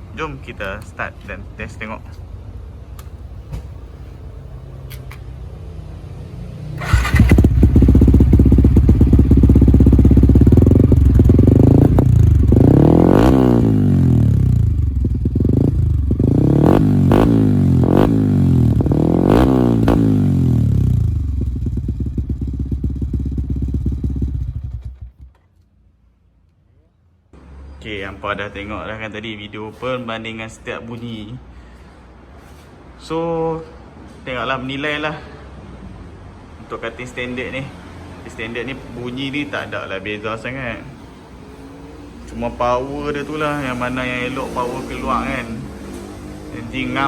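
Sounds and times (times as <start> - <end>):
motorcycle engine idling and revving: 3.0 - 25.5, 40.8 - 47.0.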